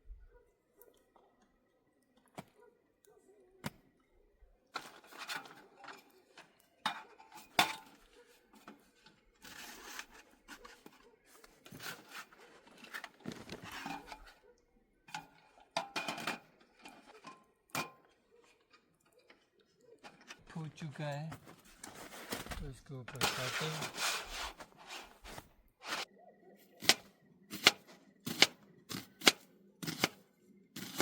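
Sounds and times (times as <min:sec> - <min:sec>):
camping gear knocks and clinks: 0:04.8 - 0:14.4, 0:15.1 - 0:20.6.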